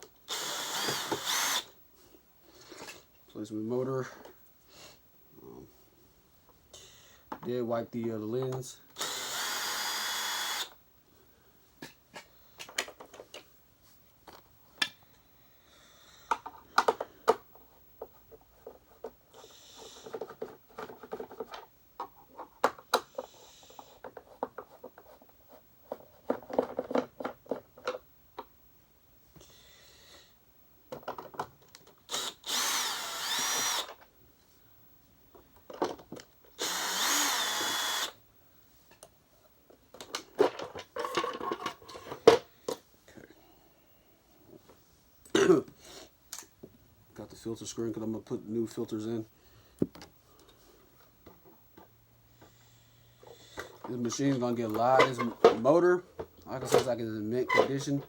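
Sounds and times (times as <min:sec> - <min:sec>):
power drill-driver whirring: 0:00.3 - 0:01.7, 0:09.0 - 0:10.8, 0:32.1 - 0:34.0, 0:36.6 - 0:38.2.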